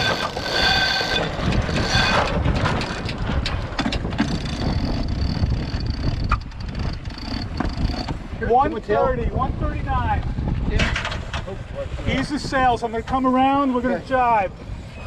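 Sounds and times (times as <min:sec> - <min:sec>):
clicks and rattles: 0:00.0 - 0:08.2, 0:10.7 - 0:11.5
wind buffeting microphone: 0:00.0 - 0:15.0.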